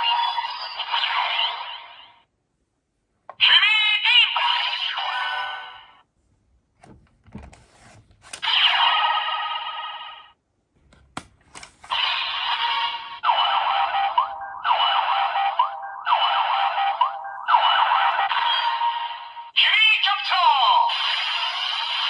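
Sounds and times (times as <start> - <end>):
electronic toy sound effects: 0.0 - 2.2, 3.4 - 6.0, 8.4 - 10.4, 11.9 - 22.0
siren-like electronic glides: 11.9 - 19.3.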